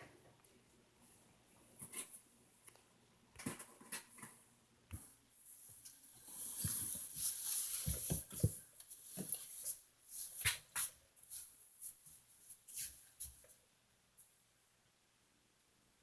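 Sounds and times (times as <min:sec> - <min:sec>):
kittens scuffling and scratching: 0:05.5 - 0:13.6.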